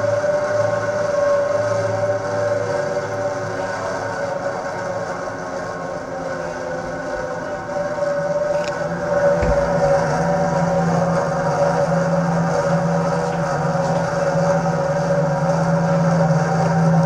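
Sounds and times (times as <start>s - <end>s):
refrigerator humming: 8.7s - 11.9s
dull knock: 9.4s - 10.2s.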